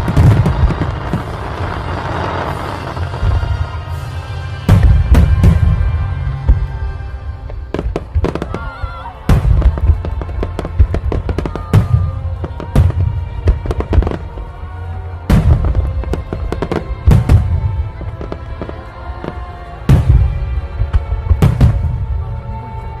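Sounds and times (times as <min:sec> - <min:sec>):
fireworks bangs: 0:00.0 - 0:22.3
fireworks crackling: 0:00.0 - 0:23.0.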